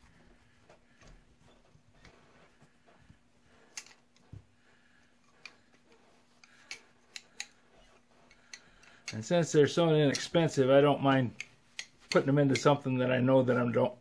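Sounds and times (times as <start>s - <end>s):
hand tools clicking: 6.4s - 10.6s, 11.3s - 12.8s.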